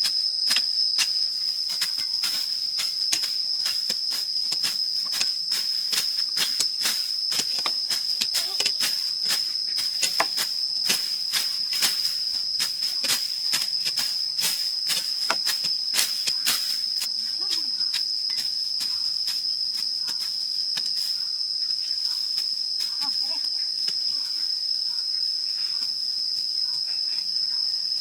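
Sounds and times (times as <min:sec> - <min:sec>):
high-pitched insect drone: 0:00.0 - 0:28.0.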